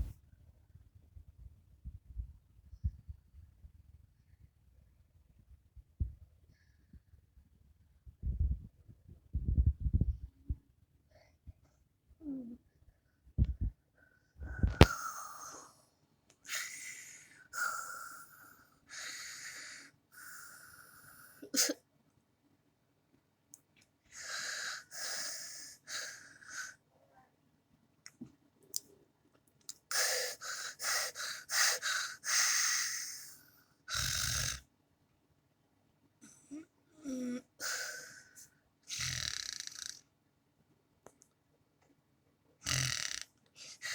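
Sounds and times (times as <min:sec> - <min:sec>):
cartoon snoring by woman: 0:33.9 - 0:34.6, 0:36.5 - 0:38.1, 0:38.9 - 0:40.0, 0:42.6 - 0:43.9.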